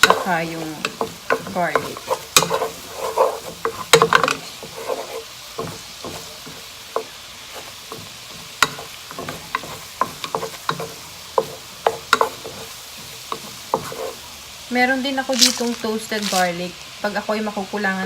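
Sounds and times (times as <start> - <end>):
utensil scraping a pan: 0.0 - 14.3
garlic sizzling in butter: 0.0 - 18.0.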